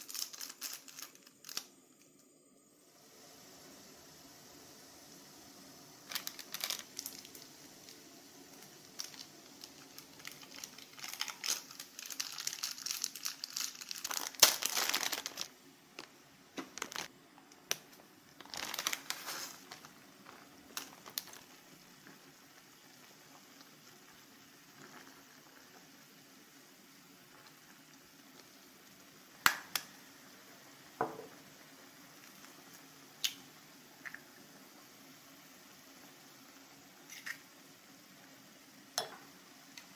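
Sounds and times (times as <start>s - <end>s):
plastic wrapper crinkling: 0.0s - 2.2s, 6.0s - 22.2s.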